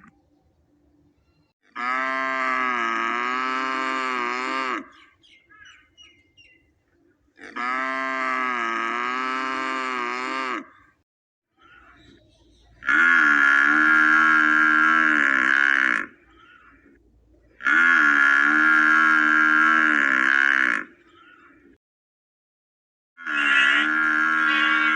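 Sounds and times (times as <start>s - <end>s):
calf mooing: 1.7s - 5.0s, 7.4s - 10.7s, 12.8s - 16.6s, 17.6s - 20.9s, 23.2s - 24.9s.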